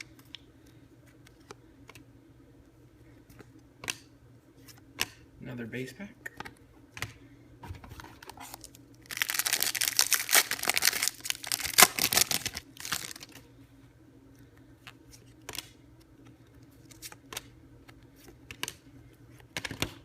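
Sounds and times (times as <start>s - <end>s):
foil wrapper tearing and crinkling: 8.5s - 13.4s
cards clicking and tapping: 16.9s - 18.8s.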